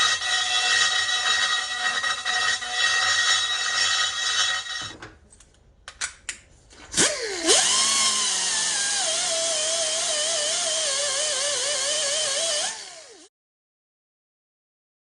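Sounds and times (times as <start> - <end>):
power tool whining: 7.0 - 13.3.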